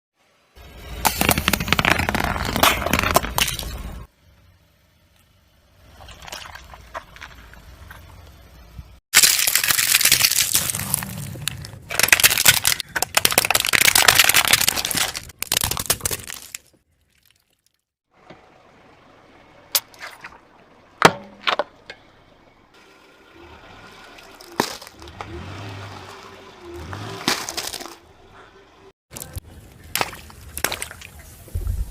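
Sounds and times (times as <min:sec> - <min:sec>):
tyre crushing objects: 0:01.0 - 0:04.1, 0:09.2 - 0:16.7, 0:24.4 - 0:25.3, 0:26.8 - 0:28.0.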